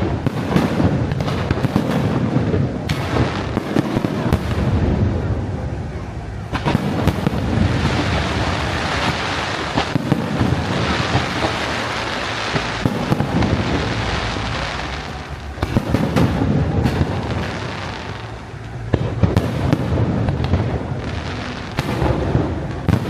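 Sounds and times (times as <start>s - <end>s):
fireworks bangs and crackling: 0.0s - 23.0s
loud sharp firework reports: 0.0s - 23.0s.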